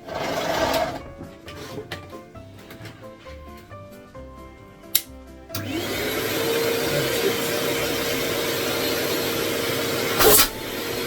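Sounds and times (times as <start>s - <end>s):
vacuum cleaner switch click: 5.0s - 5.7s
vacuum cleaner motor whine: 5.6s - 11.0s.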